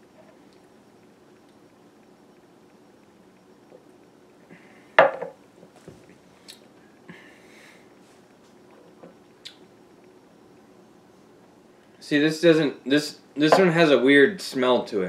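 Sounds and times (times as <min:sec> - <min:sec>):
glass knocking on hard surface: 0:05.0 - 0:05.4.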